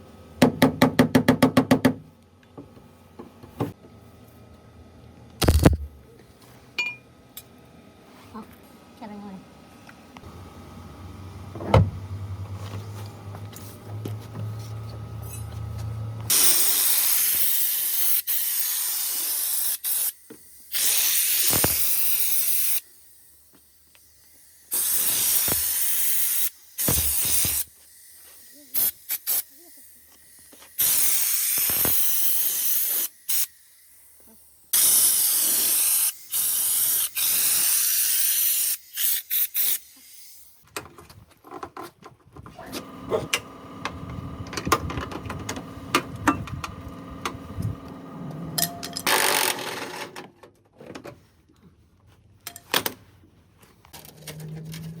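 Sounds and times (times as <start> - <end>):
air tool hissing bursts: 16.3 - 40.6.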